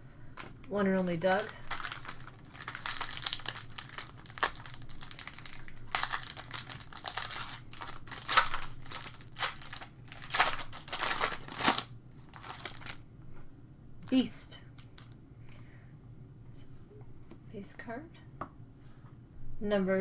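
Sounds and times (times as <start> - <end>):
foil wrapper tearing and crinkling: 1.2 - 13.0.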